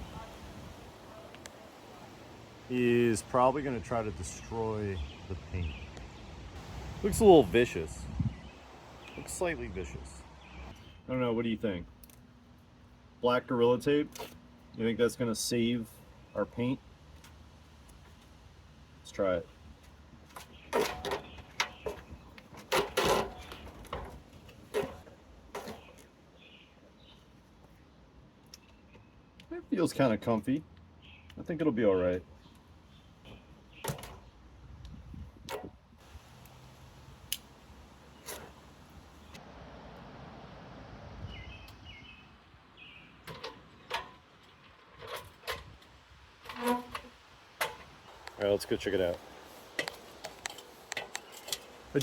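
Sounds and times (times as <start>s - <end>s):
ladder knocking and clanking: 20.7s - 25.9s.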